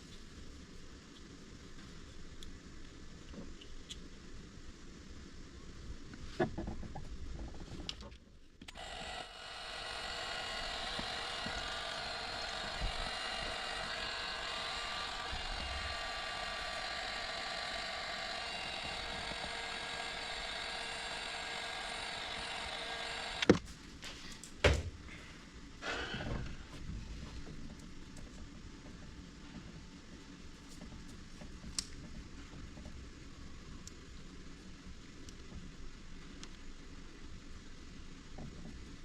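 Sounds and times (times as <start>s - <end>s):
heat gun blowing: 8.7s - 23.6s.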